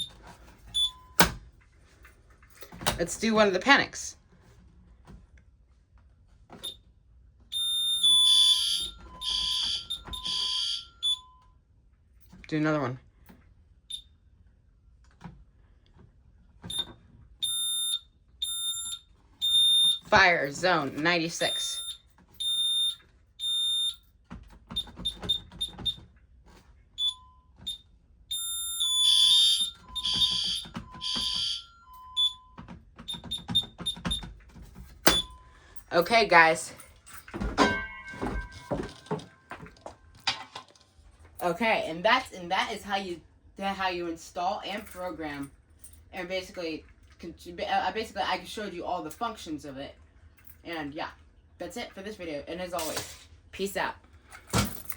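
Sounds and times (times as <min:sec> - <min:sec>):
pulsing alarm tone: 0:07.6 - 0:11.3, 0:21.4 - 0:24.0, 0:28.3 - 0:32.4.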